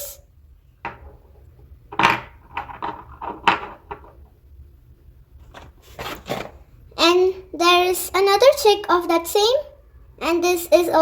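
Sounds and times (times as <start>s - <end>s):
plastic toys knocking on hard surface: 1.9s - 4.2s.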